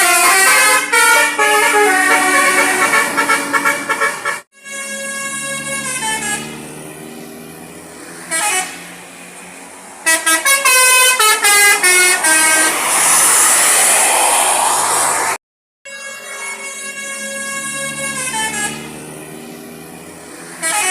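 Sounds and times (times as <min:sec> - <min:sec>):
multi-tone bus horn melody: 0:00.0 - 0:09.4, 0:10.0 - 0:12.8, 0:15.8 - 0:20.9
loud rushing noise: 0:08.8 - 0:15.4.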